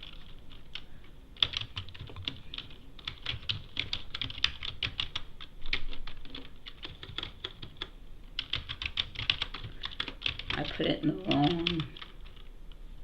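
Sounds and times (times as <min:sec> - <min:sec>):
computer keyboard typing: 0:00.0 - 0:12.5.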